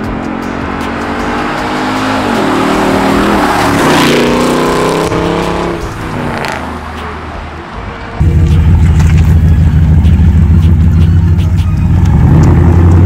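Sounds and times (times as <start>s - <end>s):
truck exhaust under throttle: 8.2s - 13.0s.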